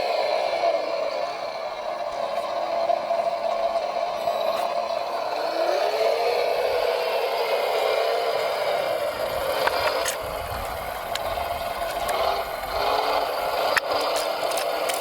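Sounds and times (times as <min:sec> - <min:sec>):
small electric motor whining: 0:00.0 - 0:15.0
plastic and metal parts clicking: 0:09.4 - 0:15.0.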